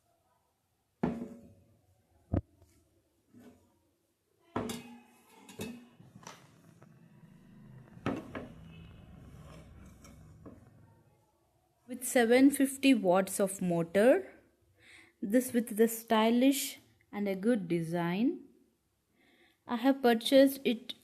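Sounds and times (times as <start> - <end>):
rustling and scraping: 5.0 - 10.9.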